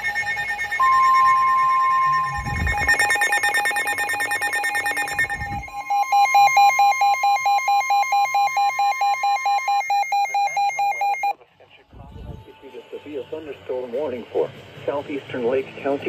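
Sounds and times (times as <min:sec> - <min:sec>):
steady warning tone: 0:00.0 - 0:11.4
radio alert beeps: 0:00.8 - 0:11.4.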